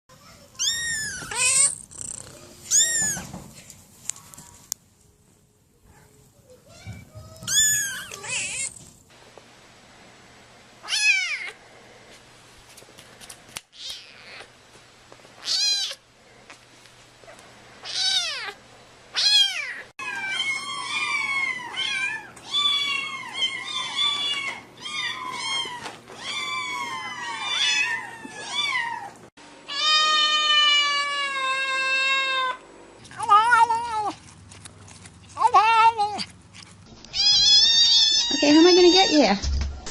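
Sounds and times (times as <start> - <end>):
cats meowing: 0.5 - 3.4, 6.8 - 9.0, 13.8 - 14.5, 15.4 - 16.0, 17.8 - 34.2, 37.1 - 39.4.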